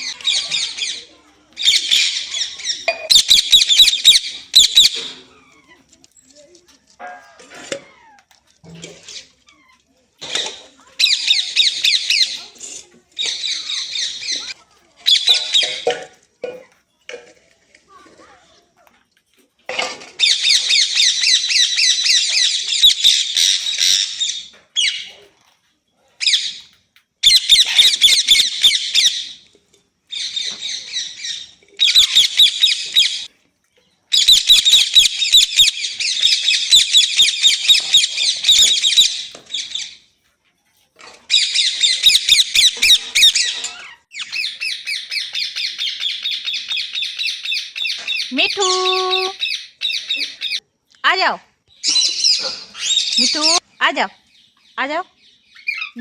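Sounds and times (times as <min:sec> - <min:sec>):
parakeet screeching: 0:00.0 - 0:05.6, 0:27.2 - 0:29.4, 0:30.1 - 0:33.3, 0:34.2 - 0:40.0, 0:41.3 - 0:50.6, 0:51.8 - 0:53.6.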